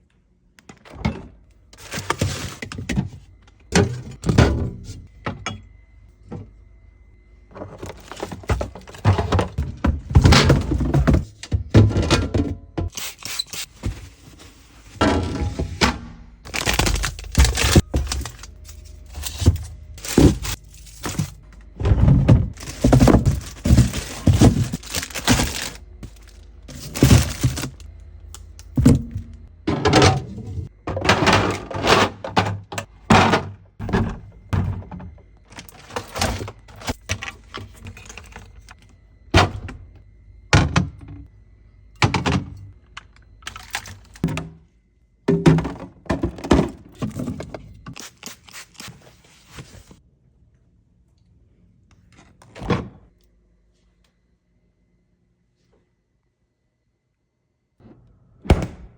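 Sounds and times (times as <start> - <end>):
containers thunking and clattering: 0.6 - 6.6, 7.5 - 13.1, 13.7 - 27.9, 28.6 - 41.3, 42.0 - 48.0.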